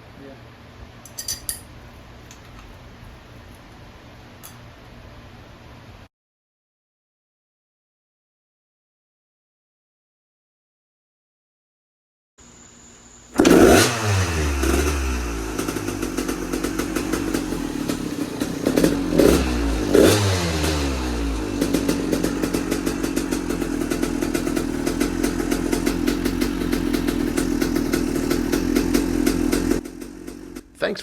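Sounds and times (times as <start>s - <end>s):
dirt bike engine revving and idling: 13.4s - 31.0s.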